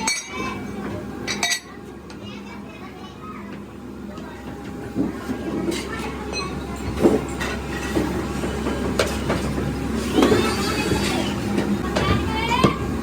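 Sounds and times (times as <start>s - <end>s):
machinery rumbling: 0.0s - 13.0s.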